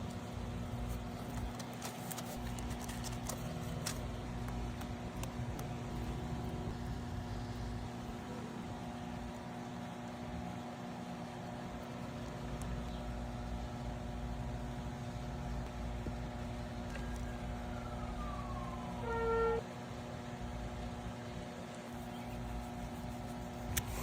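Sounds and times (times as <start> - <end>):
motor hum: 0.0 - 24.0.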